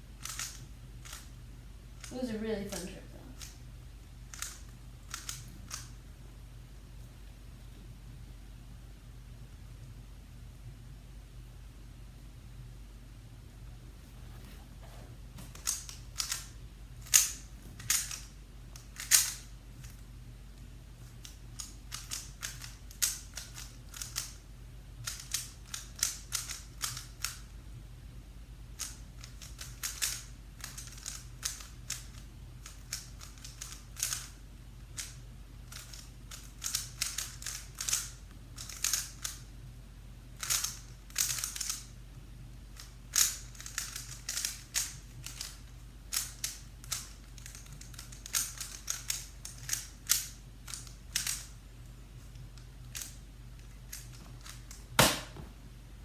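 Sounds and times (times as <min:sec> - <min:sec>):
puzzle cube plastic clicks: 0:00.2 - 0:01.3, 0:02.8 - 0:03.6, 0:04.3 - 0:06.0, 0:15.5 - 0:20.0, 0:21.1 - 0:24.4, 0:25.0 - 0:27.5, 0:28.8 - 0:34.4, 0:35.0 - 0:39.5, 0:40.4 - 0:41.9, 0:42.8 - 0:51.6, 0:52.3 - 0:55.0.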